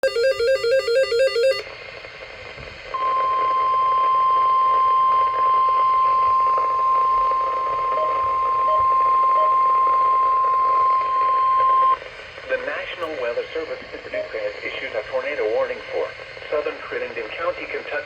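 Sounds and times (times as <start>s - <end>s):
weather radio alarm tone: 0.0s - 1.7s
radio hiss: 1.7s - 18.0s.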